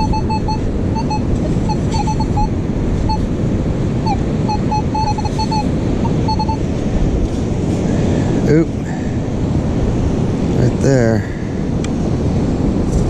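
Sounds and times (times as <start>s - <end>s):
metal detector short high beeps: 0.0s - 3.3s, 4.0s - 6.6s
strong wind on microphone: 0.0s - 13.0s.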